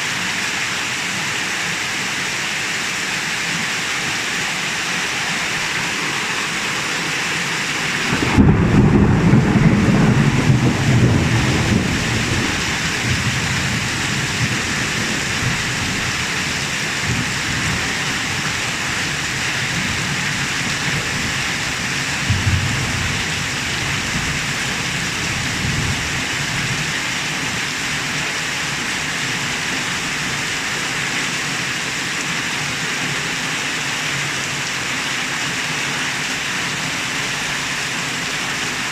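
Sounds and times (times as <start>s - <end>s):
heavy rain: 0.0s - 38.9s
thunder rumbling: 7.8s - 16.2s, 19.8s - 26.8s.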